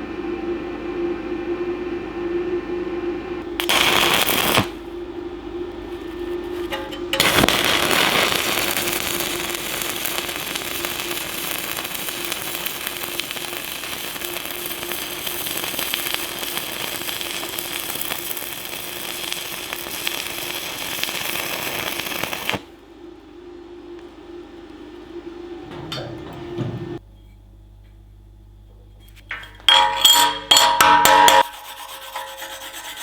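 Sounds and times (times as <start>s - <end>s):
welding arc crackling: 3.4s - 4.9s, 5.7s - 22.7s.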